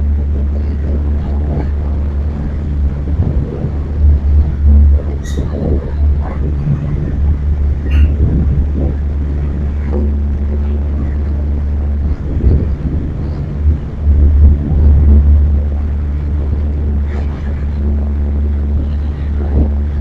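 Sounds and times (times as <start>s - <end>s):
faint voices: 0.0s - 20.0s
wind buffeting microphone: 0.0s - 20.0s.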